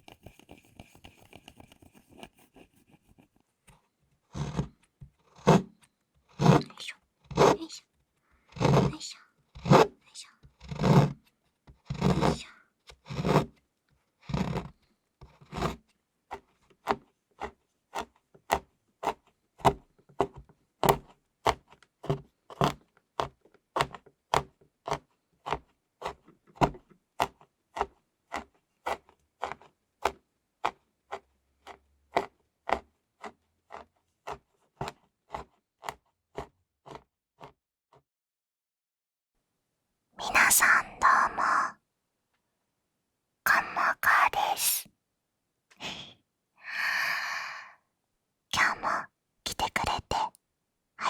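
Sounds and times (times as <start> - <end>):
strokes on chocolate slab: 0.0 - 7.6, 8.5 - 9.0, 9.6 - 13.6, 14.2 - 37.5.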